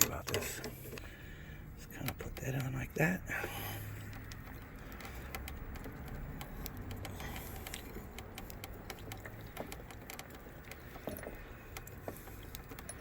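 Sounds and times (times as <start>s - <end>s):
small metal fittings clicking: 3.8s - 13.0s.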